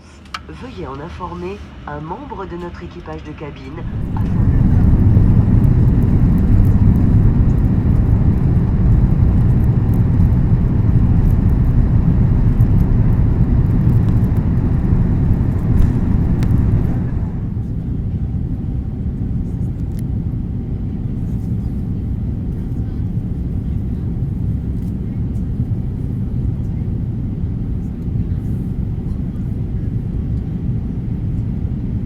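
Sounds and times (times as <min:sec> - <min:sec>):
jet engines rumbling: 0:00.0 - 0:32.0
rushing air: 0:03.8 - 0:17.6.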